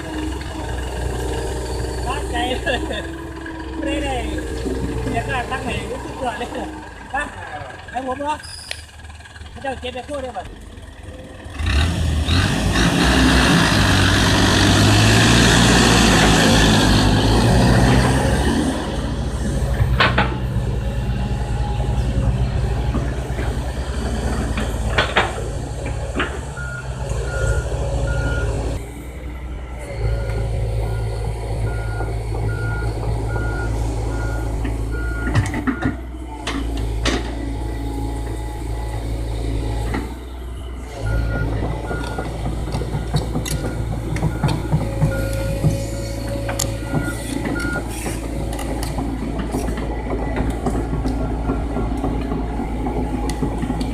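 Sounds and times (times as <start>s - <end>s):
excavator diesel engine running: 0.0s - 53.9s
sharp knocks and clanks: 19.6s - 20.8s, 22.8s - 26.6s, 41.1s - 53.9s.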